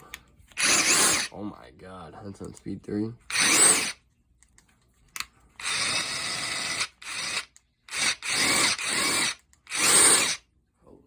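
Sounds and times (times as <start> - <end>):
impact wrench bursts: 0.6 - 1.3, 3.3 - 4.0, 5.6 - 10.4.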